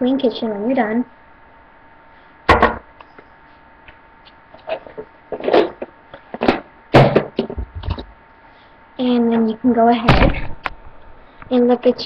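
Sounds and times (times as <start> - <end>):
kitchen items knocking and clunking: 2.5 - 2.9, 4.7 - 8.1.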